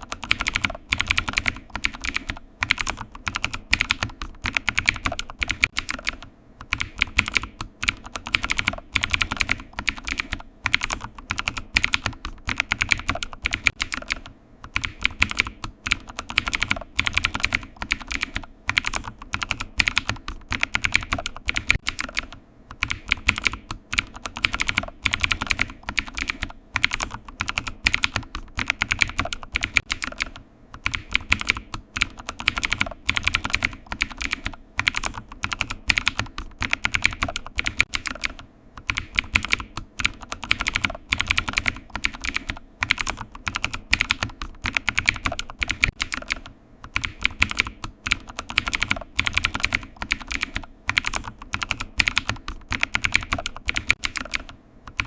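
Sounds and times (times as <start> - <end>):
computer keyboard typing: 0.0 - 55.0.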